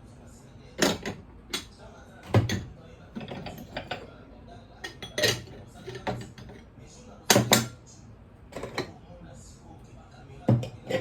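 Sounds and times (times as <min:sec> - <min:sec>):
dishes and cutlery clattering: 0:00.8 - 0:04.1, 0:04.8 - 0:06.7, 0:07.3 - 0:07.8, 0:08.5 - 0:09.0, 0:10.5 - 0:11.0.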